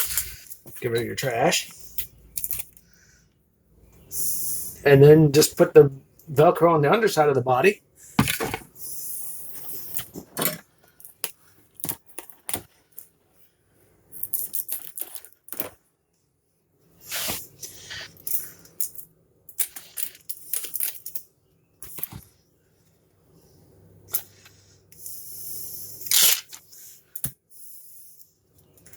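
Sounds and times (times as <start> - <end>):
velcro tearing: 17.0 - 18.1, 26.0 - 26.6.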